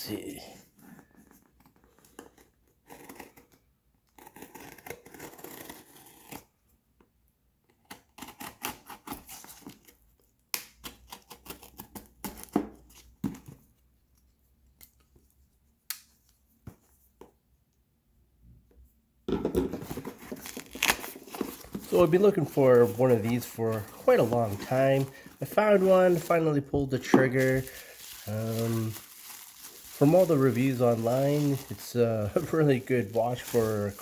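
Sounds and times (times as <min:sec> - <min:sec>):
packaging rustling: 0:19.6 - 0:34.0
knife slitting and tearing package: 0:19.9 - 0:26.5, 0:27.1 - 0:34.0.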